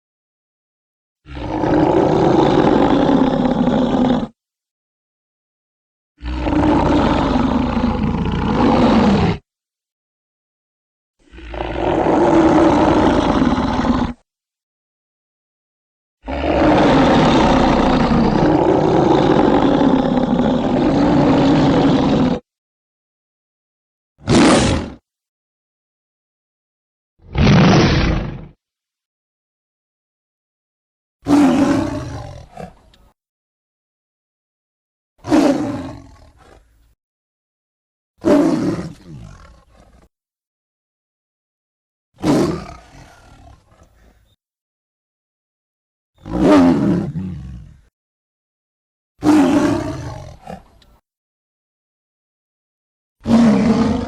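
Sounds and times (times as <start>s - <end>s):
deep dinosaur roars: 1.3s - 4.4s, 6.2s - 9.4s, 11.2s - 14.2s, 16.2s - 22.5s, 24.2s - 25.0s, 27.2s - 28.6s, 31.3s - 33.0s, 35.2s - 36.8s, 38.2s - 40.1s, 42.2s - 44.2s, 46.2s - 47.9s, 49.2s - 50.8s, 53.2s - 54.0s
low growling creature call: 1.3s - 4.4s, 6.2s - 9.4s, 11.2s - 14.2s, 16.2s - 22.5s, 46.2s - 47.9s, 53.2s - 54.0s.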